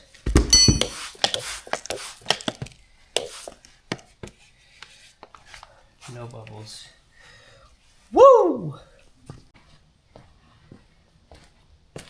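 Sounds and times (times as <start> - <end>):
loud thump with metallic ring: 0.3 - 1.0.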